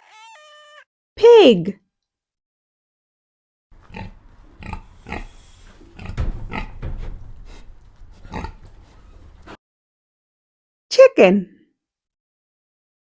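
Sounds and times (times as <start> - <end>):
pig grunting: 3.8 - 9.6.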